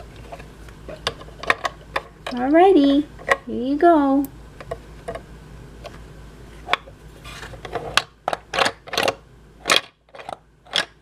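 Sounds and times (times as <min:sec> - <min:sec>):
plastic toy parts clicking: 0:08.0 - 0:11.0.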